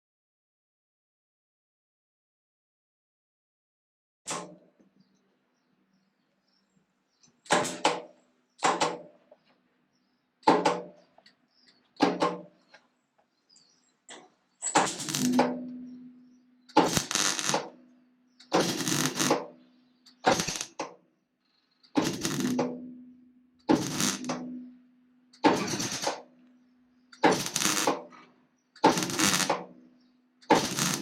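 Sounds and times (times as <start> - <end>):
welder crackling: 14.1 - 15.7, 16.7 - 21.0, 21.9 - 22.9, 23.6 - 26.5, 27.1 - 28.2, 28.8 - 31.0.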